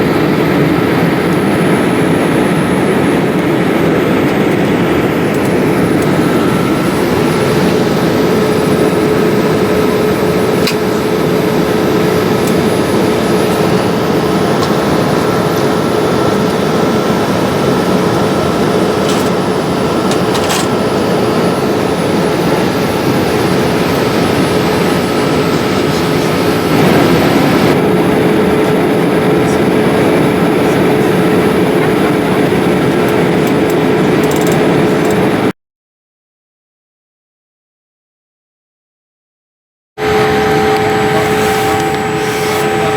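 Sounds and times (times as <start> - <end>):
jet cabin rushing noise: 0.0 - 27.8, 40.0 - 42.9
constant hum: 0.0 - 35.2, 40.0 - 42.9.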